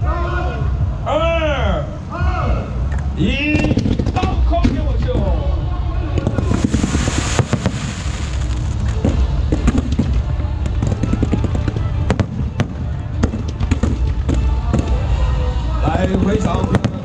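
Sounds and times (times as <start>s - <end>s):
low rumble: 4.5s - 15.3s
fireworks bangs and crackles: 6.1s - 15.2s, 15.8s - 17.0s.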